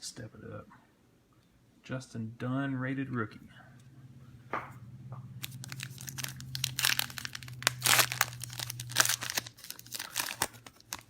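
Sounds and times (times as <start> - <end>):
foil wrapper tearing and crinkling: 5.4 - 11.0.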